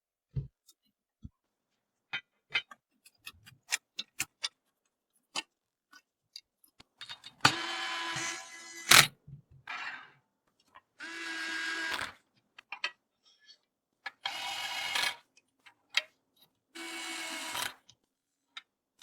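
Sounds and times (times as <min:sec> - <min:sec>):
electric screwdriver running: 0:07.5 - 0:09.1, 0:11.0 - 0:12.1, 0:14.3 - 0:15.2, 0:16.8 - 0:17.8.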